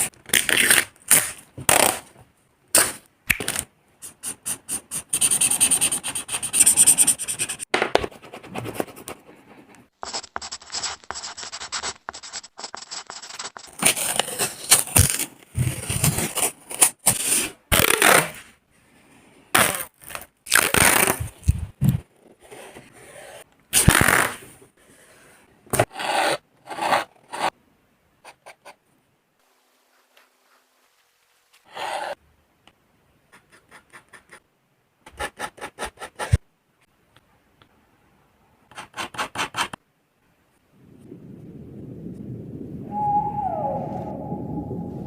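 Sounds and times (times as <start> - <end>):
oil pastel scraping on paper: 10.0 - 14.8.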